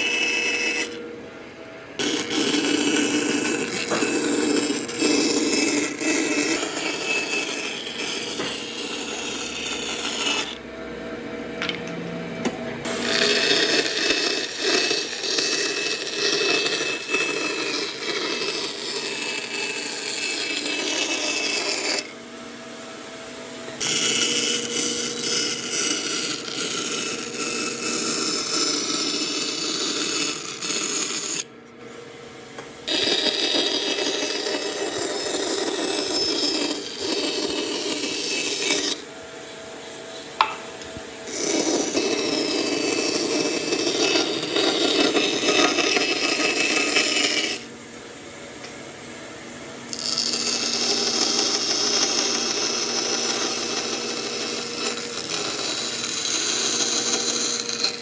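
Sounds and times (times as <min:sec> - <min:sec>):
power tool rasping wood: 0:00.0 - 0:01.1, 0:02.0 - 0:10.7, 0:12.8 - 0:22.2, 0:23.7 - 0:31.5, 0:32.8 - 0:39.2, 0:40.4 - 0:47.8, 0:49.9 - 0:58.0
motor hum: 0:00.0 - 0:31.5.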